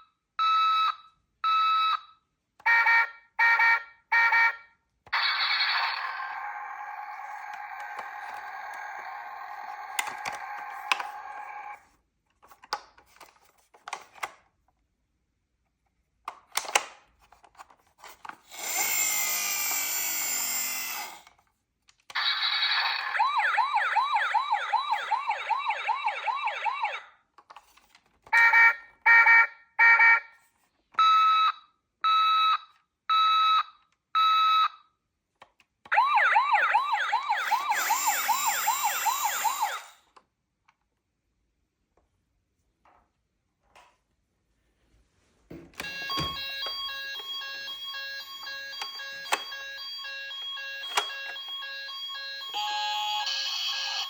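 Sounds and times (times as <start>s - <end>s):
toy electronic sirens: 2.7s - 11.9s, 18.5s - 21.3s, 22.1s - 27.1s, 28.3s - 30.3s, 35.9s - 40.1s, 45.8s - 54.0s.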